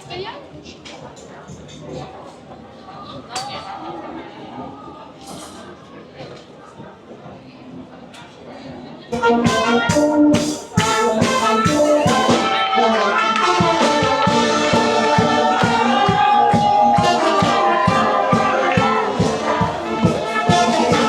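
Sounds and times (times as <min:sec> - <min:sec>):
music with quick percussive beat: 0:09.2 - 0:21.0.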